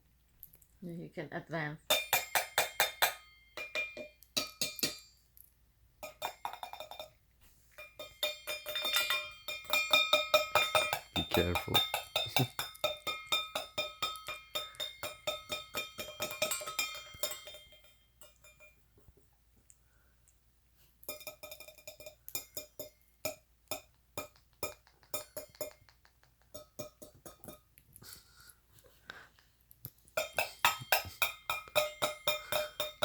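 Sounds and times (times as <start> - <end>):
ringing clinking strikes: 8.0 - 18.8, 30.2 - 33.0.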